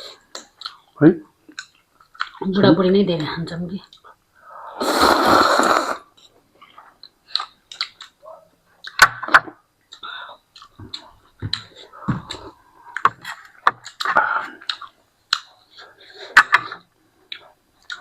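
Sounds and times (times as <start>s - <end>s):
chewing with smacks: 0.3s - 0.8s, 1.5s - 2.4s, 6.2s - 8.2s, 9.9s - 18.0s
noodle slurp: 4.8s - 6.1s.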